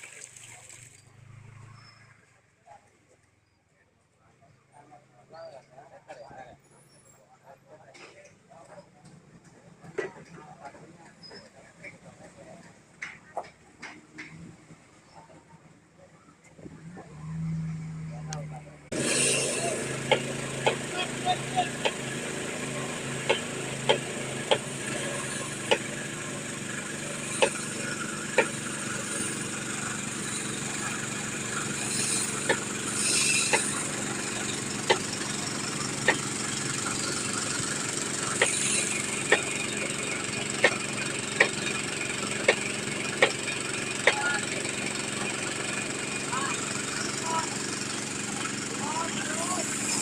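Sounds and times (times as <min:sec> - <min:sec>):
drilling machine engine running: 0:18.9 - 0:50.0.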